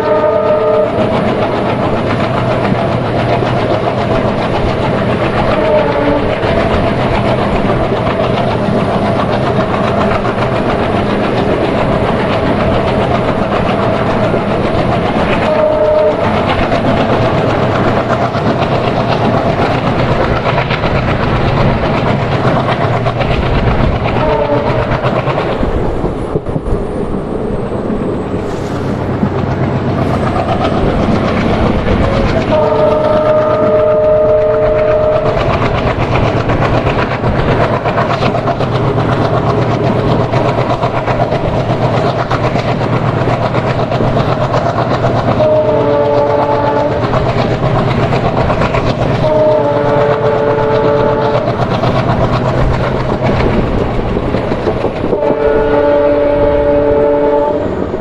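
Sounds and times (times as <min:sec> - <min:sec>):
train horn: 0:00.0 - 0:01.1, 0:05.3 - 0:06.7, 0:15.4 - 0:16.4, 0:24.2 - 0:25.0, 0:32.1 - 0:35.6, 0:45.3 - 0:47.1, 0:49.1 - 0:51.5, 0:55.1 - 0:57.8
train wheels clattering on rails: 0:00.0 - 0:58.0.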